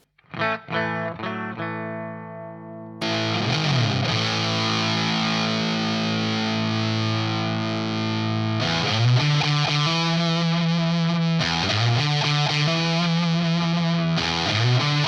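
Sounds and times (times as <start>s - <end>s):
fuzz electric guitar chord: 0.5s - 15.0s.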